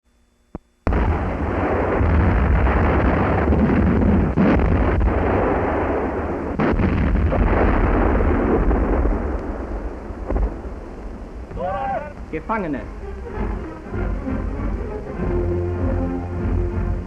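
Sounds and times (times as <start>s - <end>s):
artillery fire rumble: 0.8s - 11.5s
sharp blasts: 0.9s - 10.9s.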